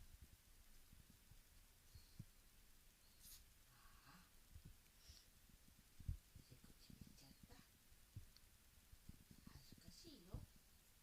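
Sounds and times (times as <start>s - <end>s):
weak low thumps: 5.5s - 10.6s.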